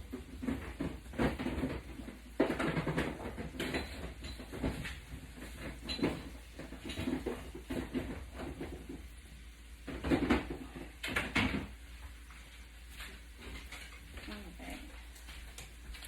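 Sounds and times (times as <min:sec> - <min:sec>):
utensils and pans clattering: 0:00.2 - 0:08.8.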